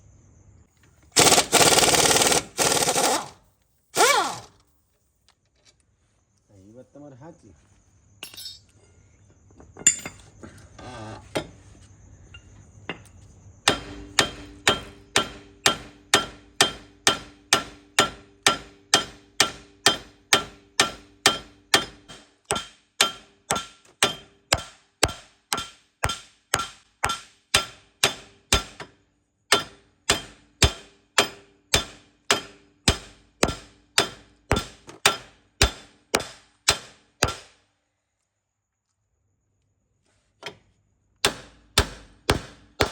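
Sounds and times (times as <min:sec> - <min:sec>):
light clinking: 0:08.2 - 0:09.0, 0:09.8 - 0:10.4
hammer striking metal: 0:13.6 - 0:28.9, 0:29.5 - 0:37.5, 0:41.2 - 0:42.9.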